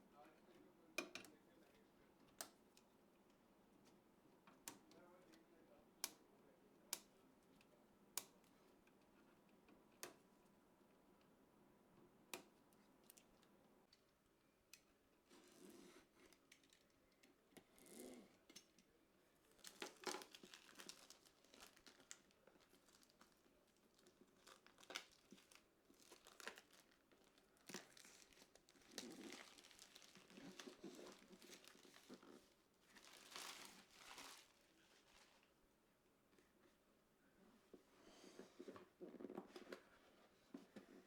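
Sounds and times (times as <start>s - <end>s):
crinkling and rustling: 14.8s - 35.6s, 37.5s - 41.0s.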